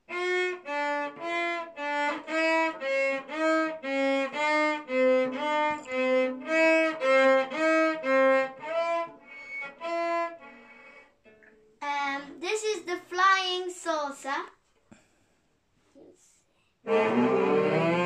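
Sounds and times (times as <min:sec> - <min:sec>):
cello alternating two notes: 0:16.8 - 0:18.0.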